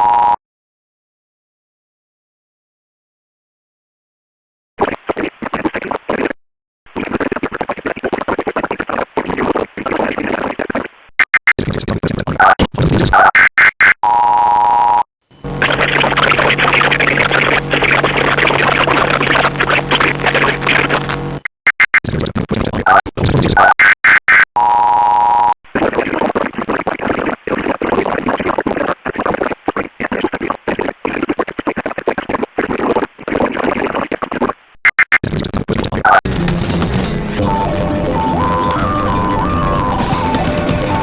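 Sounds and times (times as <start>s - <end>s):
steady electronic tone: 15.3s - 21.4s, 36.2s - 41.0s
glitching harsh electronic noise: 15.4s - 24.5s, 34.8s - 41.0s.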